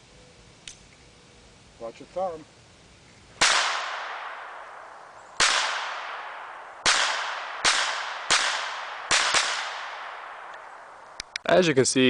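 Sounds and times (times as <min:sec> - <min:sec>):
pistol shots echoing: 0:03.4 - 0:10.7.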